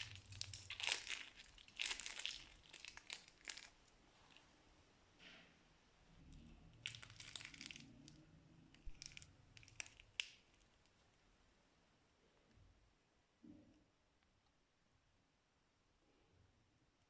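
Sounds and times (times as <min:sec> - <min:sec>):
plastic piping bags crinkling: 0:00.0 - 0:04.5, 0:06.8 - 0:11.1.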